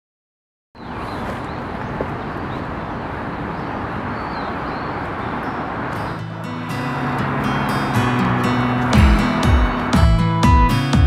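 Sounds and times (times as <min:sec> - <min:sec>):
steady rushing outdoor noise: 0:00.8 - 0:11.0
acoustic guitar music: 0:05.2 - 0:11.0.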